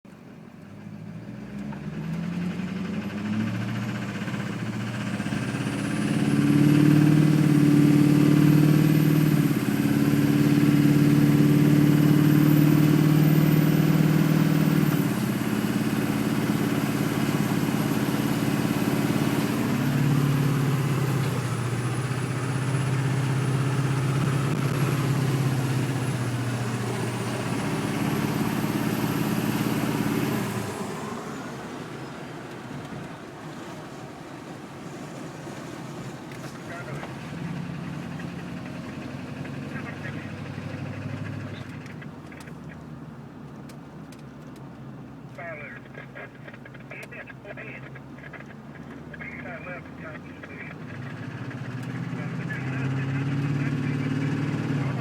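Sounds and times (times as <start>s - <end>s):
diesel engine running: 0.1s - 55.0s
high engine whine: 0.1s - 55.0s.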